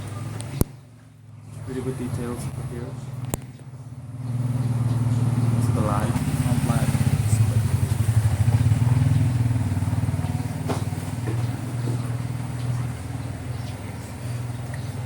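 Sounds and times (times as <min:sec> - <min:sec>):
low pulsing engine-like drone: 0:00.0 - 0:15.0.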